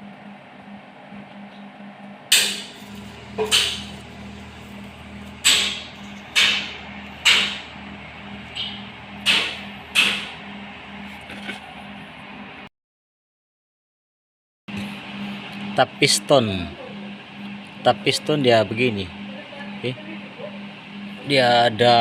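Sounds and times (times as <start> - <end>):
low hum: 0.0 - 12.7, 14.7 - 22.0
faint pulsing beat: 0.3 - 11.2
sharp knocks: 3.4 - 4.0, 5.4 - 7.7, 8.5 - 10.4.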